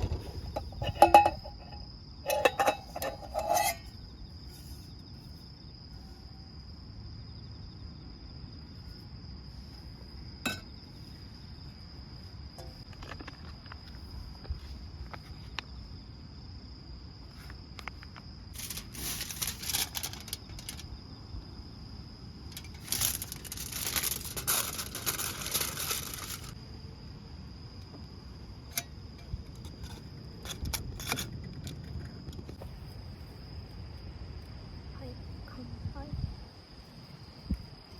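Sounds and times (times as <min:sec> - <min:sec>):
rustling hiss-like noise: 0:00.0 - 0:05.6, 0:17.2 - 0:21.0, 0:22.4 - 0:26.6
crickets chirping: 0:00.0 - 0:37.9.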